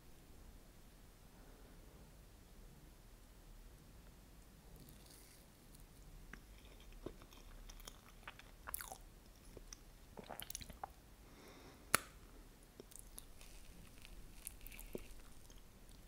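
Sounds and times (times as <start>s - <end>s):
soft chewing with wet clicks: 4.7s - 11.0s, 12.8s - 16.0s.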